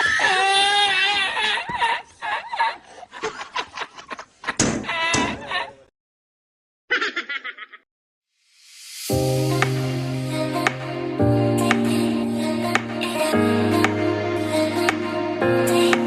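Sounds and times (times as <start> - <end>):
high-pitched laughter and squealing: 0.0 - 5.9, 6.9 - 7.8
sharp knocks and slaps: 4.6 - 5.4.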